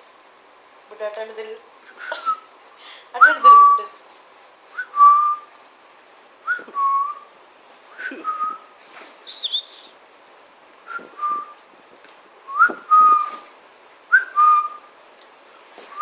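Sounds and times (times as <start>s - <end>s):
person whistling: 4.8s - 5.5s, 6.5s - 7.2s, 8.0s - 8.6s, 9.3s - 9.9s, 10.9s - 11.6s, 12.5s - 13.4s, 14.1s - 14.8s
higher warbling whistled chirp: 9.2s - 10.0s.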